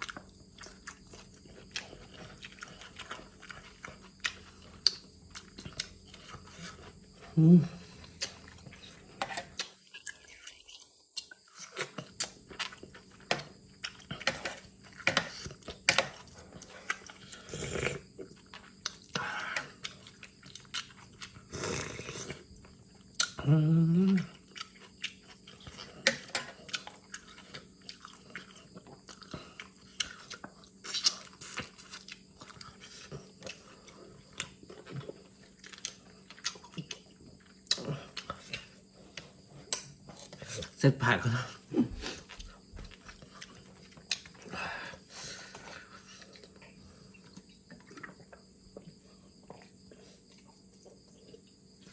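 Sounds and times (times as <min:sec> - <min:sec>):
chewing and crunching vegetables: 0:00.0 - 0:51.9.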